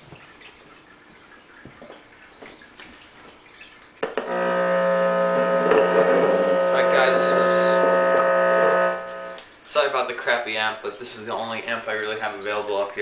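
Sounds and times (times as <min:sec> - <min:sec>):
electric guitar chord ringing: 0:04.2 - 0:09.4.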